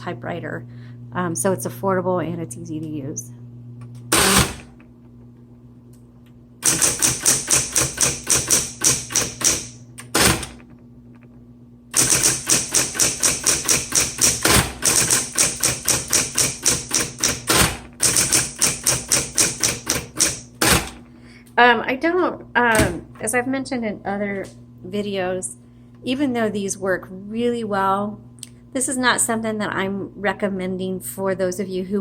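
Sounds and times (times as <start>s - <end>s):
typewriter motor hum: 3.9s - 4.9s, 6.6s - 11.2s, 11.9s - 21.1s
typewriter keystrokes: 6.6s - 10.6s, 12.0s - 21.0s.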